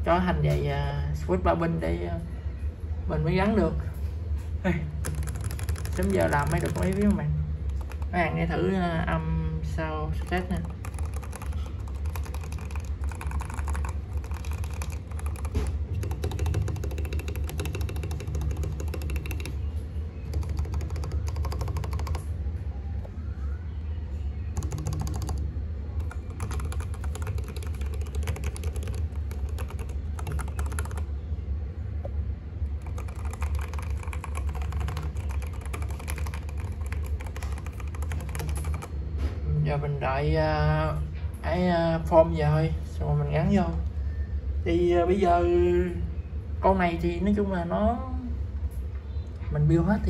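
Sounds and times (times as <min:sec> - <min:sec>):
steady low hum: 0:00.0 - 0:50.0
mechanical keyboard typing: 0:05.0 - 0:08.2, 0:10.1 - 0:22.2, 0:24.5 - 0:31.1, 0:32.7 - 0:38.9.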